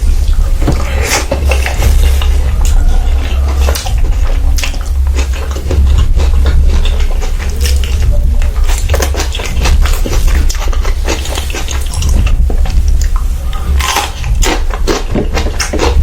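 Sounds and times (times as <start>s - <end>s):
chewing and biting mouth sounds: 0.0s - 16.0s
steady low hum: 0.0s - 16.0s.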